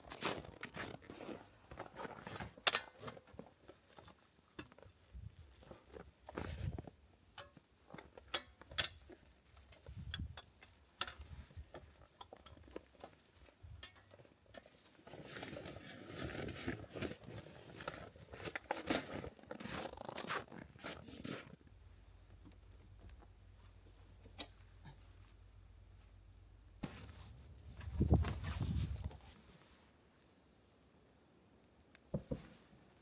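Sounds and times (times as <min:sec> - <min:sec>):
crunching and rustling: 0:00.0 - 0:04.0, 0:14.1 - 0:21.7, 0:26.8 - 0:29.5
camp gear clicks and knocks: 0:05.7 - 0:17.1.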